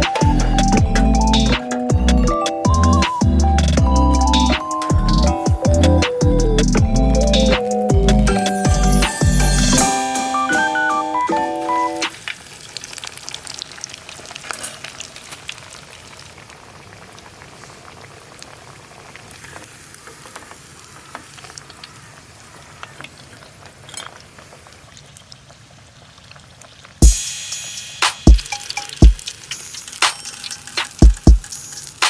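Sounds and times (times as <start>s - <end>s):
food sizzling in a pan: 7.6s - 32.0s.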